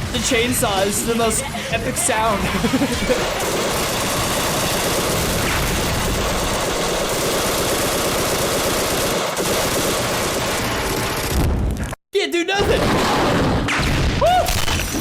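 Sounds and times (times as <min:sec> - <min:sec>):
continuous rapid rattle: 0:00.1 - 0:11.4.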